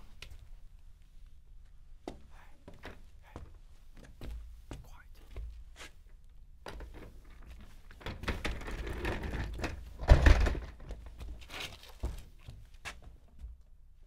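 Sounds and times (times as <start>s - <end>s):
rustling and handling noises: 5.5s - 13.4s.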